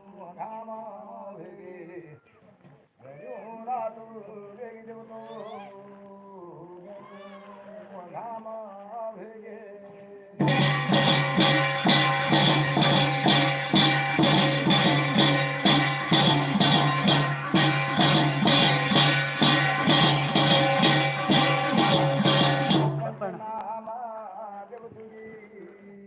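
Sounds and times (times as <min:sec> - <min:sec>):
rattling percussion beat: 0:10.4 - 0:23.6
steady held tones: 0:10.4 - 0:23.6.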